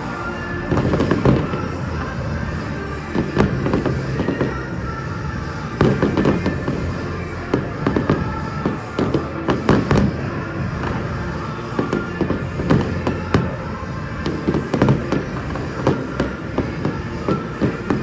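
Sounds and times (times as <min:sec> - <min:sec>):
fireworks bursting with sharp bangs: 0:00.0 - 0:18.0
music playing: 0:00.0 - 0:18.0.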